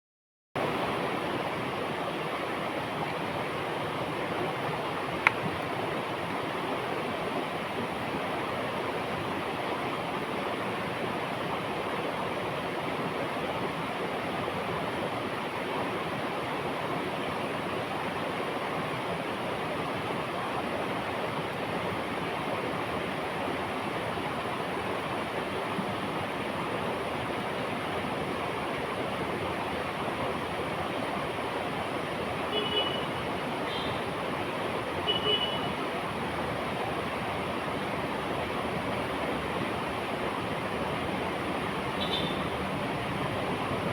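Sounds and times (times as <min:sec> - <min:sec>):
river water flowing over rocks: 0:00.6 - 0:43.9.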